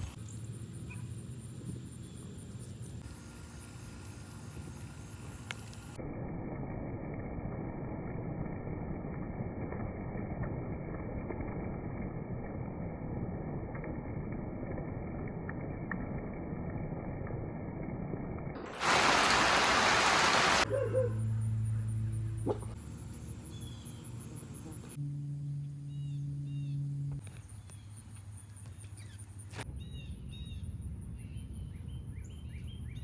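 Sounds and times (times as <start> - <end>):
muffled rain hiss: 0.0 - 6.0, 18.6 - 20.6
loud bright rain hiss: 3.0 - 6.0, 18.6 - 20.7
low steady hum: 20.6 - 33.0.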